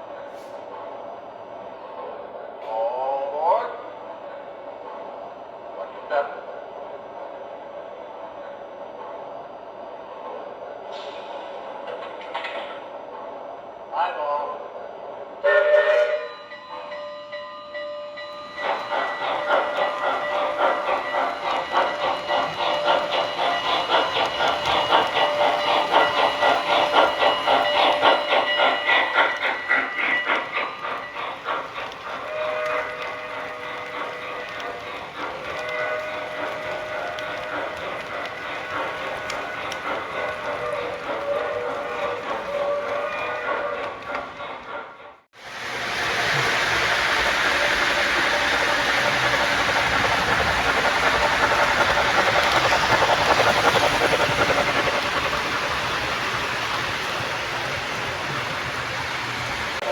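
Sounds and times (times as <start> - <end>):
model steam locomotive chuffing: 15.4 - 59.9.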